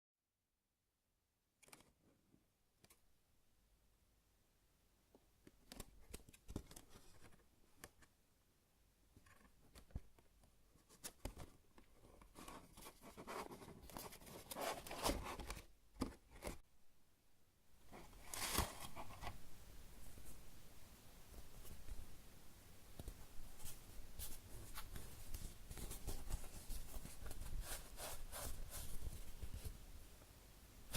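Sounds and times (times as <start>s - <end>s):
rustling: 9.2s - 16.6s, 17.8s - 20.6s, 22.9s - 30.1s.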